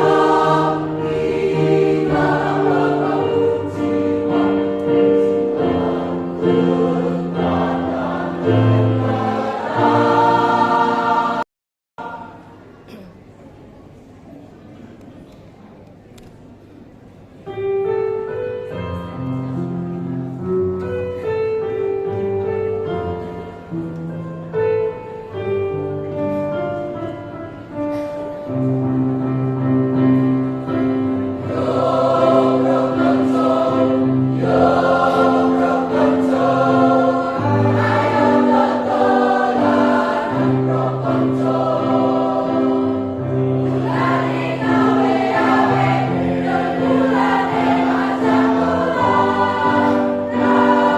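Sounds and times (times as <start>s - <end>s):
choir singing sustained chords: 0.0s - 12.8s, 30.5s - 50.9s.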